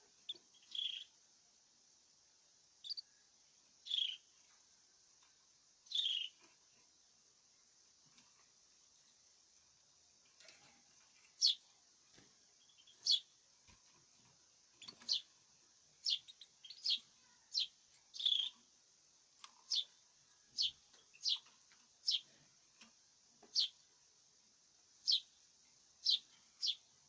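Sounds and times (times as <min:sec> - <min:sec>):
cage bird chirping: 0:00.1 - 0:01.2, 0:02.8 - 0:03.2, 0:03.8 - 0:04.4, 0:05.8 - 0:06.6, 0:10.4 - 0:11.8, 0:12.6 - 0:18.7, 0:19.4 - 0:22.4, 0:23.4 - 0:23.8, 0:25.0 - 0:25.4, 0:26.0 - 0:27.0.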